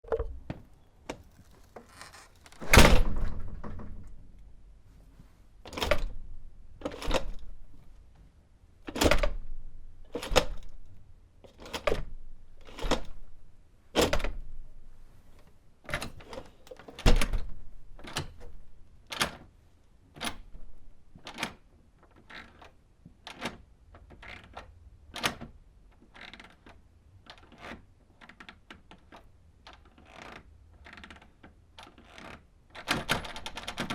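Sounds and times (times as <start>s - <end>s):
door latch clicks: 1.9s - 4.5s, 6.8s - 7.5s
door knocks and thuds: 2.6s - 4.5s.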